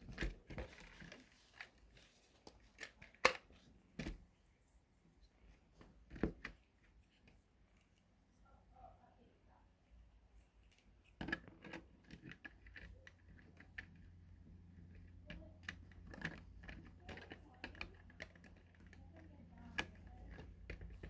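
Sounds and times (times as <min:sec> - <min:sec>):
plastic pieces clicking: 0:14.9 - 0:21.0.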